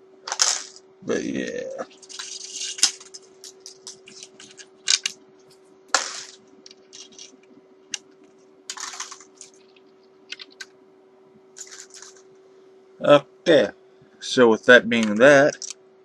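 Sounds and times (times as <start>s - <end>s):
faint steady hum: 0.0s - 16.0s
guitar strings scraping: 1.4s - 5.1s.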